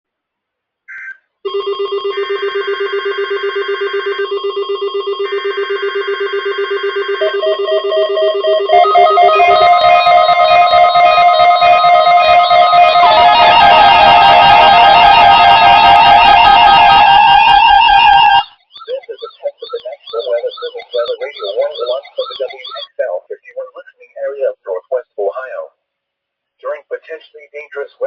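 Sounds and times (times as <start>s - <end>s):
electronic chirp: 0.9s - 2.6s, 3.4s - 24.9s
higher alarm beep: 0.9s - 23.2s
fast-pulsing low alarm tone: 1.5s - 23.0s.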